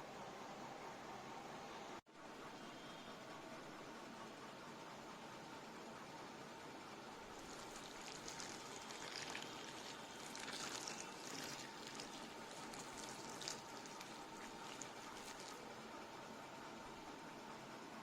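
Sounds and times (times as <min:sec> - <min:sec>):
faint steady hum: 0:00.0 - 0:18.0
water running: 0:07.3 - 0:15.7.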